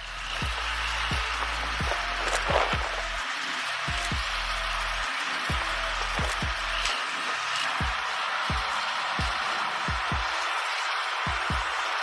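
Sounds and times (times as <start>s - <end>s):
background music: 0.0s - 12.0s
steady rushing hiss: 0.0s - 12.0s
deep kick drum beat: 0.3s - 3.2s, 3.9s - 4.4s, 5.5s - 6.8s, 7.8s - 10.3s, 11.3s - 11.8s.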